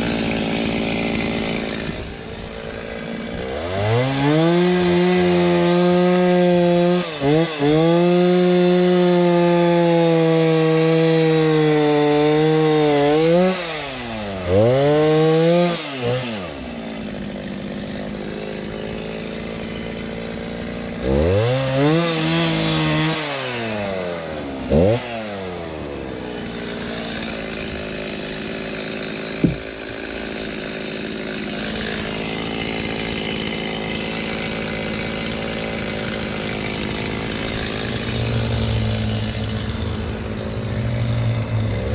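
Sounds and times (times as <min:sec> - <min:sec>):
chainsaw cutting wood: 0:00.0 - 0:41.9
chainsaw idling and revving: 0:00.0 - 0:41.9
sharp knock: 0:29.4 - 0:29.6.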